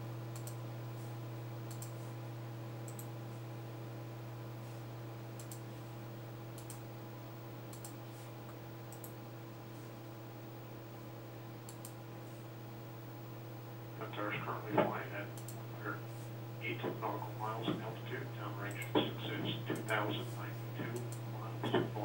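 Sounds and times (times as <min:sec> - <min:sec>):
low electrical hum: 0:00.0 - 0:22.0
faint high-pitched clicks: 0:00.3 - 0:00.6, 0:01.7 - 0:02.0, 0:02.9 - 0:03.1, 0:05.4 - 0:05.6, 0:06.6 - 0:06.8, 0:07.7 - 0:09.2.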